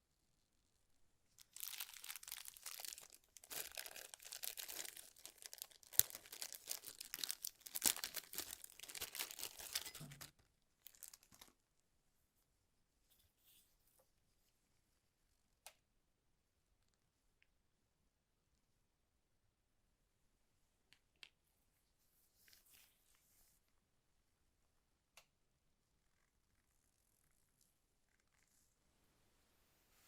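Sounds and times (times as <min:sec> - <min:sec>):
packaging crackling rustle: 0:01.4 - 0:11.6.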